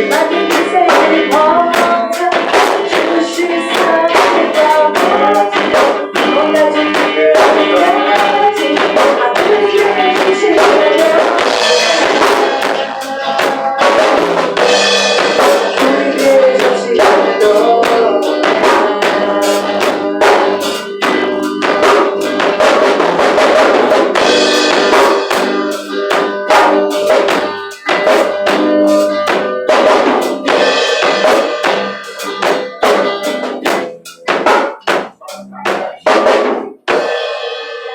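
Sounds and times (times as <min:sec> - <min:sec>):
person singing: 0:00.0 - 0:36.6, 0:37.5 - 0:37.9
drum kit beat: 0:00.0 - 0:37.9
live band playing worship song: 0:00.0 - 0:37.9.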